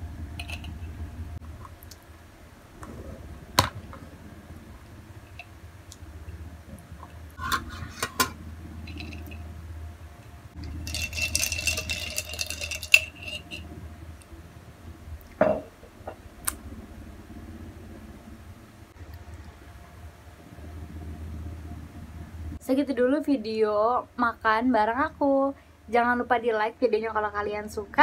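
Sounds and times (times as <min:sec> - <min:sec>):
tableware and utensils clinking: 0:00.4 - 0:00.8, 0:07.4 - 0:09.5, 0:10.6 - 0:13.7.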